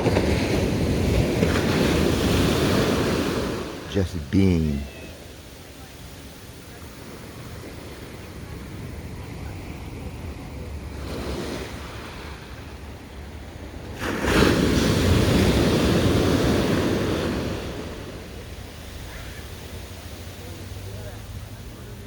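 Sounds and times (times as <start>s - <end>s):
ocean wave breaking: 0.0s - 6.6s, 13.8s - 21.4s.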